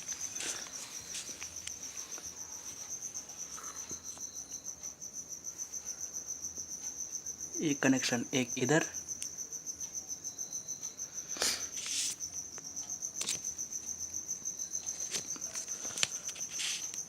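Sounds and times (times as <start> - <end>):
wires clicking and rustling: 0.0 - 4.3, 11.6 - 14.0, 14.8 - 17.0
cricket chirping: 0.0 - 17.0.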